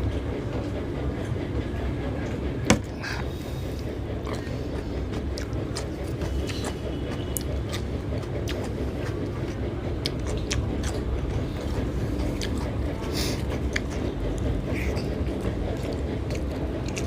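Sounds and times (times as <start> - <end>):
steady low rumble: 0.0 - 17.0
chewing crunches: 4.2 - 17.0.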